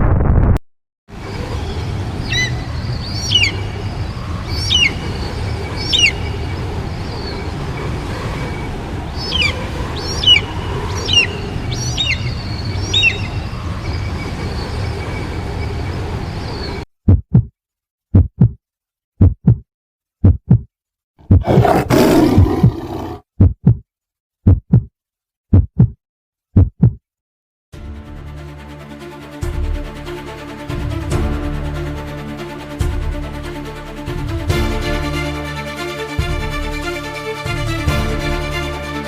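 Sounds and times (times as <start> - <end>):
paired thumps: 17.1 - 17.5, 18.1 - 18.6, 19.2 - 21.5, 23.4 - 23.8, 24.5 - 24.9, 25.5 - 26.0, 26.6 - 27.0.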